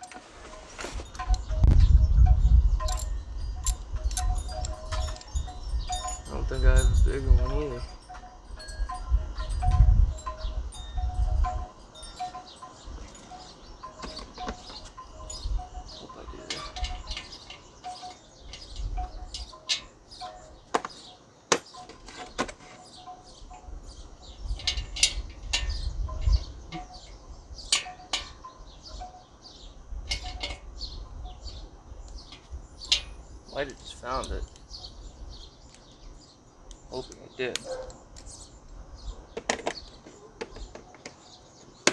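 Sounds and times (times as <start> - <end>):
metal tools clinking: 0.0 - 1.7, 2.8 - 31.6, 32.2 - 34.9.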